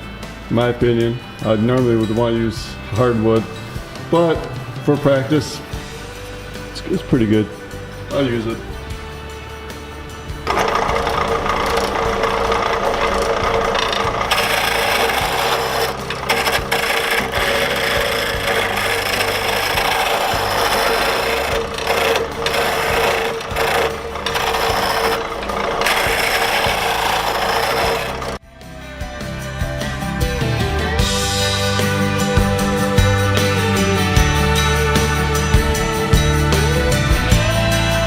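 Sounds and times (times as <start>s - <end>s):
wood lathe humming: 1.6s - 28.4s
lathe tool rasping on wood: 6.1s - 28.4s.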